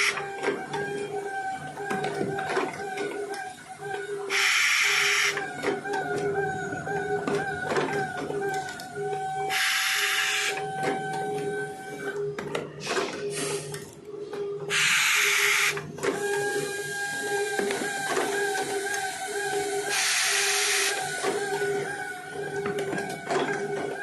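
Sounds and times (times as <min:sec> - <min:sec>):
machine whine: 0:00.0 - 0:24.0
machine clicks and knocks: 0:22.4 - 0:24.0.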